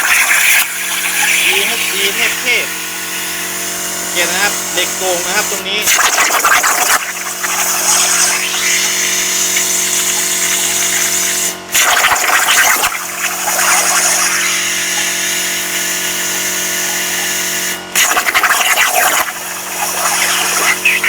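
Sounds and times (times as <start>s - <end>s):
plasma cutter hissing: 0.0s - 21.0s.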